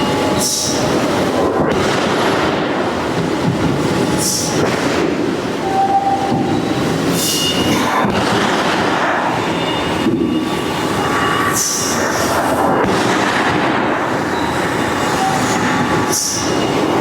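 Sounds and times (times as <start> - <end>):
metalworking machinery din: 0.0 - 17.0
high-pitched squeals: 5.6 - 8.2, 14.1 - 17.0.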